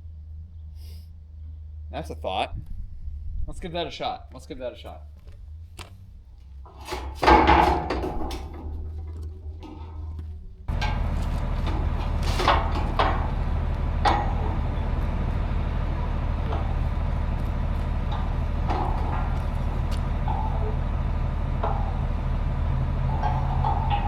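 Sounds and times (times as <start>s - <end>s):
farm machine engine idling: 3.6s - 24.0s
sharp metallic clanks: 6.7s - 24.0s.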